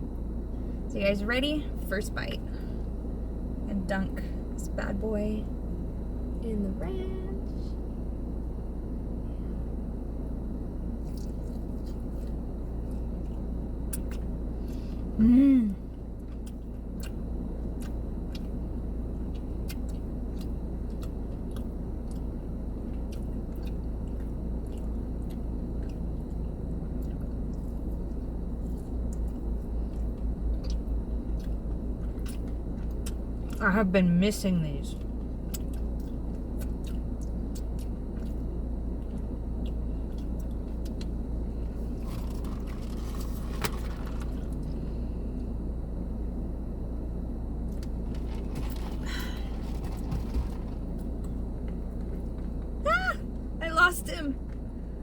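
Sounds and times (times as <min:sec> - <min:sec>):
steady low hum: 0:00.0 - 0:55.0
close-up chewing of fried food: 0:11.0 - 0:15.1, 0:15.9 - 0:33.6, 0:34.9 - 0:44.9.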